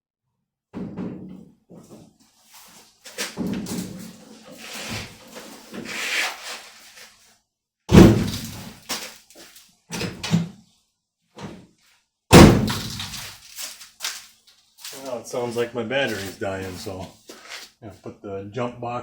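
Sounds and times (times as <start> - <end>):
truck door slamming: 12.3 - 13.0.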